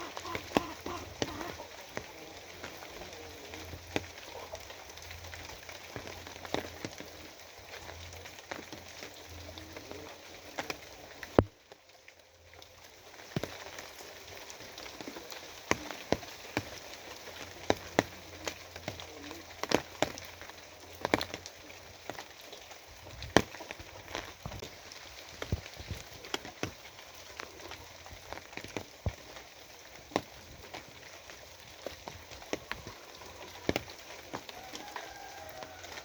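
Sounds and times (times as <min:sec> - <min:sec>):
rain hiss: 0:00.0 - 0:36.0.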